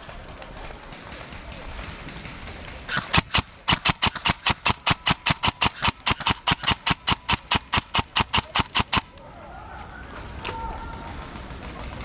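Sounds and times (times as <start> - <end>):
airsoft gun firing: 2.9 - 9.2.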